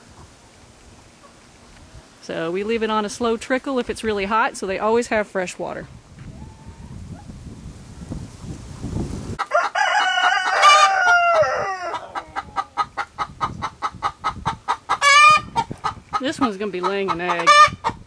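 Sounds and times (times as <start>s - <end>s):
rooster crowing: 9.4s - 12.8s
hen clucking: 9.4s - 18.0s.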